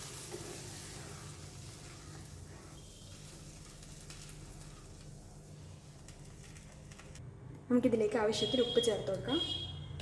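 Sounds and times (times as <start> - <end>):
faint sizzling in a pan: 0.0 - 7.0.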